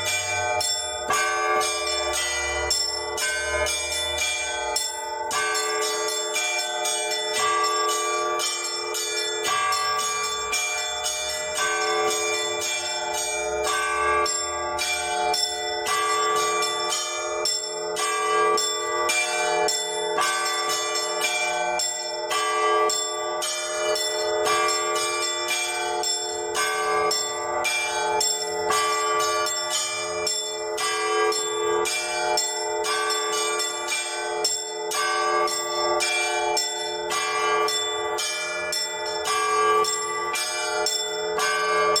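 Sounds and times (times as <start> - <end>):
church bells ringing: 0.0 - 42.0.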